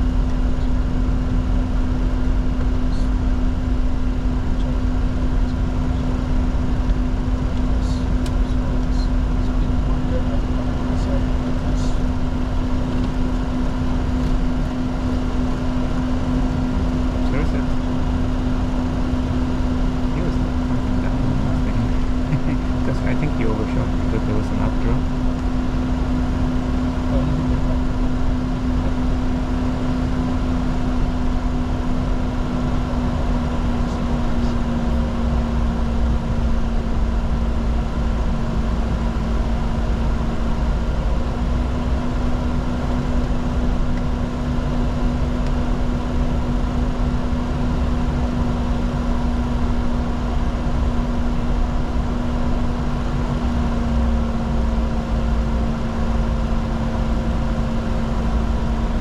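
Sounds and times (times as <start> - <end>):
jet cockpit engine drone: 0.0 - 59.0.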